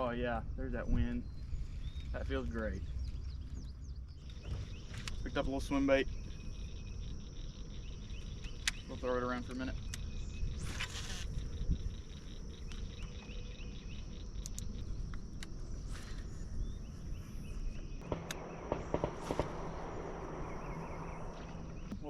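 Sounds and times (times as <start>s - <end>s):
insects chirping in trills: 0.0s - 22.0s
wind rumble on microphone: 0.0s - 22.0s
steady high drone: 18.0s - 22.0s.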